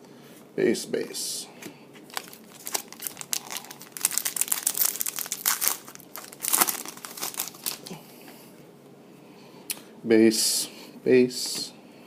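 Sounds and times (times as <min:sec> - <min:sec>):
foil wrappers crinkling and tearing: 0:02.0 - 0:08.0.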